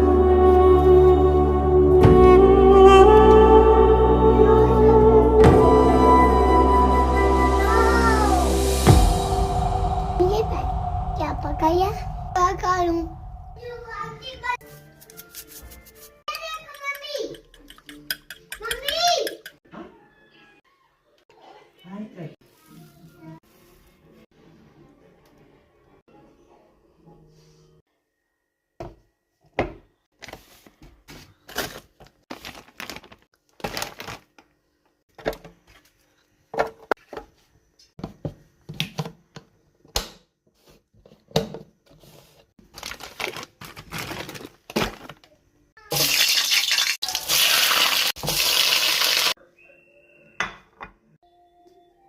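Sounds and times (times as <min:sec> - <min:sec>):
loud steady rushing noise: 0:08.6 - 0:14.2
utensils clinking on dishes: 0:16.7 - 0:19.6.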